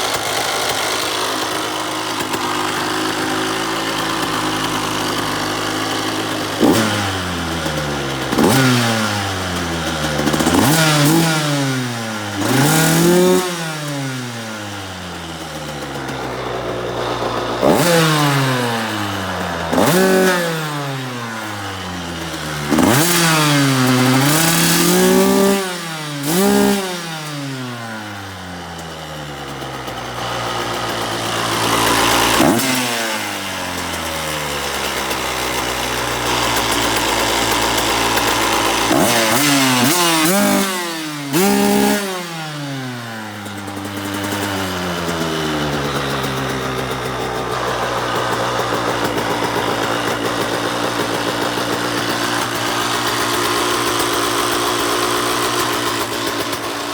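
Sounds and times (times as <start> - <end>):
motorcycle engine throttle blips: 14.0 - 25.5, 41.2 - 56.7.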